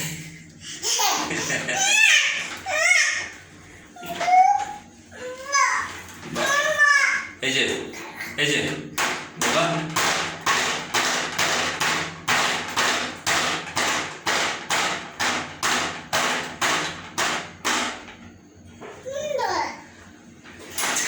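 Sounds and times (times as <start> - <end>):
steady sharp banging: 8.4 - 18.2.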